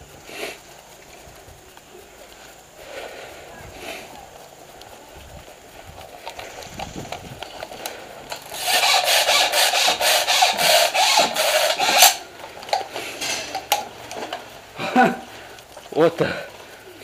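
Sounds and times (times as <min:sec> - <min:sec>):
rough scraping and rubbing: 0:03.3 - 0:12.2.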